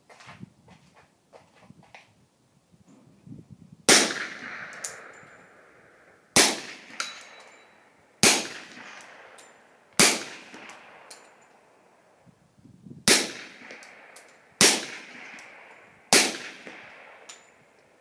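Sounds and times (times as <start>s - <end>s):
suppressed pistol shots: 3.9s - 5.6s, 6.4s - 7.6s, 8.2s - 11.3s, 13.1s - 17.4s.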